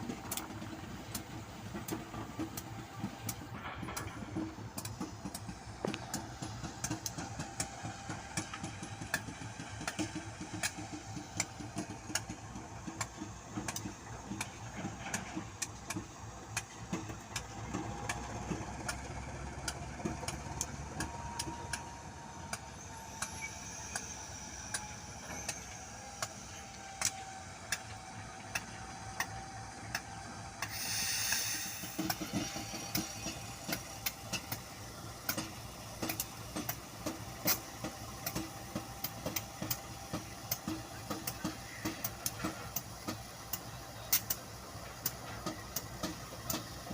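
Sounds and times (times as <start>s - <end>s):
diesel train engine hum: 0.0s - 46.9s
sharp clicks and knocks: 0.1s - 24.1s, 24.7s - 46.9s
burst of hiss: 30.6s - 33.5s.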